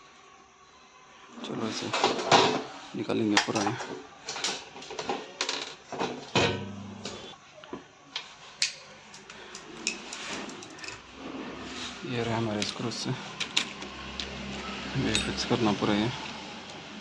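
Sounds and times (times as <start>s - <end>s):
metal parts clinking: 12.4s - 13.9s, 15.0s - 15.8s.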